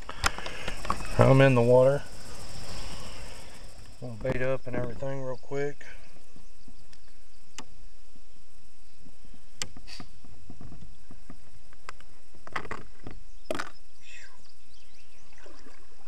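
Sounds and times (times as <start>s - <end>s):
fishing gear clicks and rustles: 0.0s - 1.3s.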